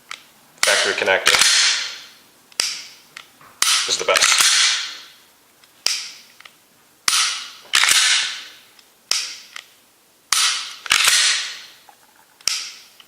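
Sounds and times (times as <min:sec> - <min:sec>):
pistol shots echoing: 0:00.6 - 0:02.9, 0:03.6 - 0:05.1, 0:07.1 - 0:08.6, 0:10.3 - 0:11.7.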